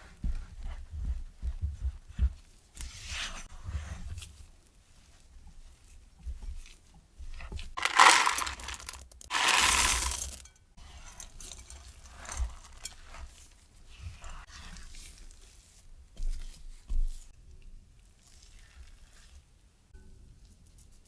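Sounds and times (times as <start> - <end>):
handling and tapping: 5.4 - 10.6
chocolate chips poured into bowl: 7.8 - 10.4.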